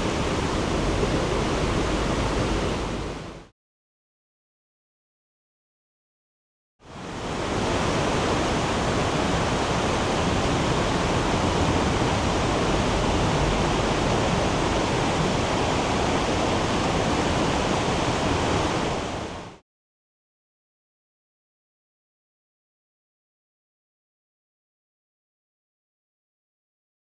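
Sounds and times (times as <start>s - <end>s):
mountain stream rushing: 0.0s - 3.5s, 6.9s - 19.6s.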